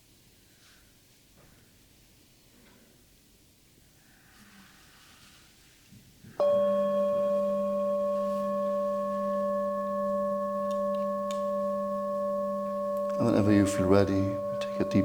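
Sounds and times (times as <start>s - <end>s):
singing bowl ringing: 6.4s - 15.0s.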